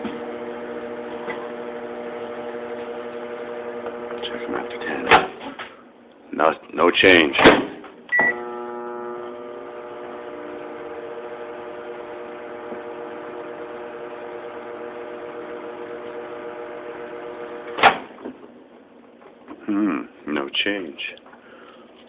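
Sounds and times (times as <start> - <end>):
microwave oven humming: 0.0 - 5.1, 8.1 - 18.1.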